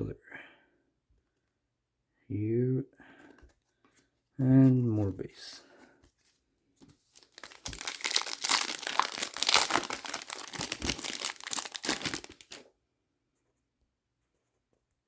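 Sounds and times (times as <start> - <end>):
foil wrapper crinkling and tearing: 7.0 - 12.6.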